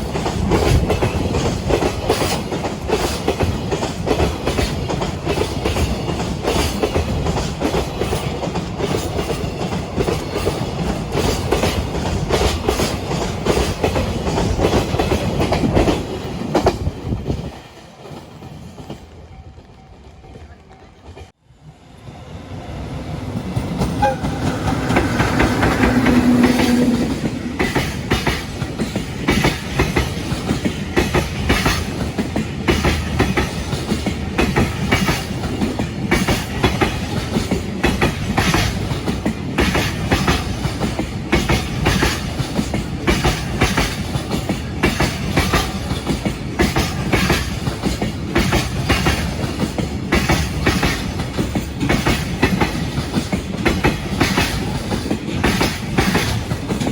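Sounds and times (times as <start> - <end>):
freight train passing: 0.0 - 56.9
wheels clacking over rail joints: 23.4 - 56.9.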